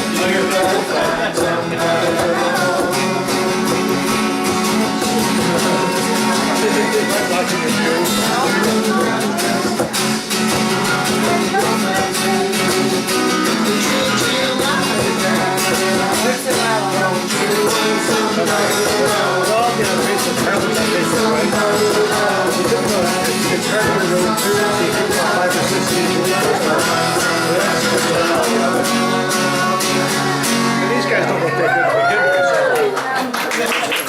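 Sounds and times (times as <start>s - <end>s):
people singing: 0.0s - 31.7s
guitar playing: 0.0s - 32.6s.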